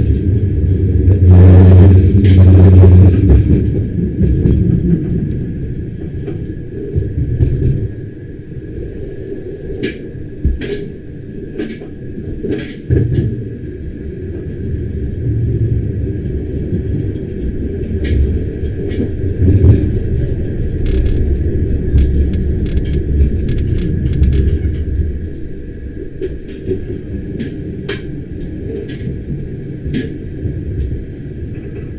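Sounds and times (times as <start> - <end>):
train rumbling on track: 0.0 - 8.0, 15.8 - 25.4
clicks and rattles: 19.6 - 24.8.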